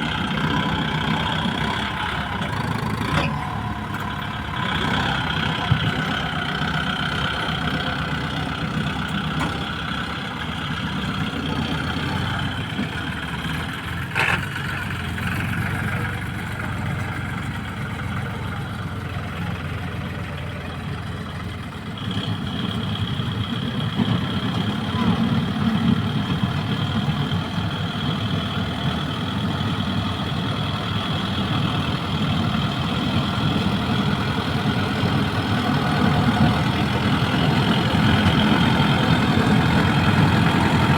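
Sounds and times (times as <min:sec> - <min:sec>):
tractor engine running: 0:00.0 - 0:40.9.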